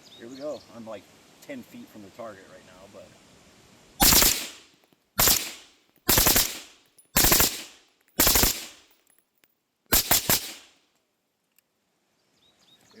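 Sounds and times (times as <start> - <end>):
rifle automatic bursts: 4.0 - 9.0, 9.9 - 10.8.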